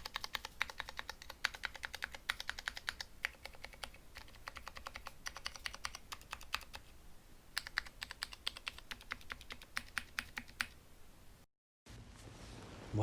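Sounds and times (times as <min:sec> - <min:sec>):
mechanical keyboard typing: 0:00.0 - 0:06.9, 0:07.6 - 0:10.8.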